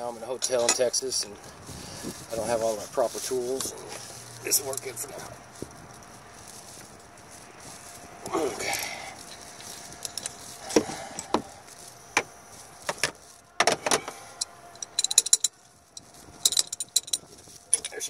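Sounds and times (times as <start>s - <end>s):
metal hand tools clinking: 0.4s - 1.0s, 10.0s - 10.4s, 14.4s - 15.6s, 16.4s - 18.0s.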